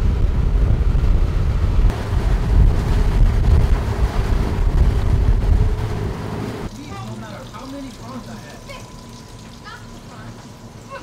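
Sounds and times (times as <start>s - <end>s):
wind buffeting microphone: 0.0s - 6.7s
faint steady hum: 0.0s - 11.0s.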